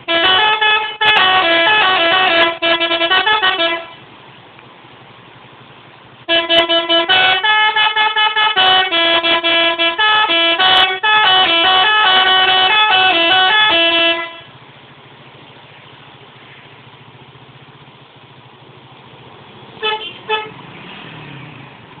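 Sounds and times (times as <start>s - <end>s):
bus multi-tone musical horn: 0.0s - 4.0s, 6.3s - 14.5s, 19.8s - 20.7s
bus engine idling: 0.0s - 20.7s
short horn toots: 0.1s - 4.0s, 6.3s - 14.5s, 19.8s - 20.6s.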